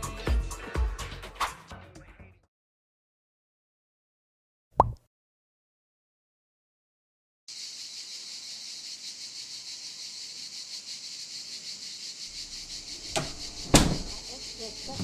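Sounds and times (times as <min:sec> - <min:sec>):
high-pitched fluttering hiss: 0:07.5 - 0:15.0.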